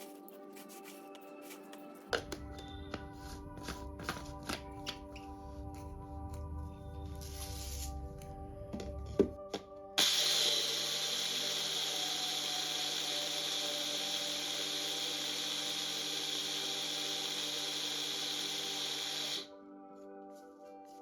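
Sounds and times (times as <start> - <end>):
mixer grinder grinding rice: 10.0 - 19.5.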